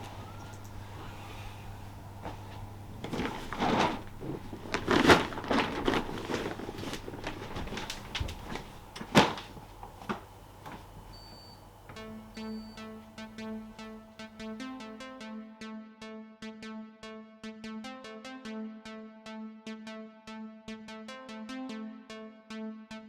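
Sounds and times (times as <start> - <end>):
steady low hum: 0.0 - 15.2.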